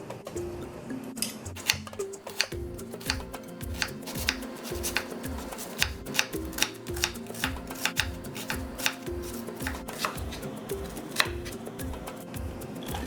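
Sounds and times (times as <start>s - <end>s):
background music: 0.0s - 13.0s
peppers being crushed: 1.6s - 3.2s, 3.8s - 11.6s.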